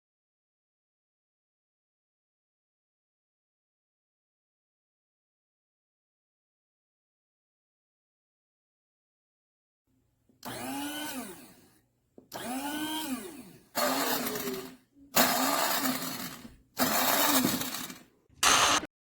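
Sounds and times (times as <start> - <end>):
coffee grinder motor pulsing: 10.4 - 11.7, 12.3 - 18.9.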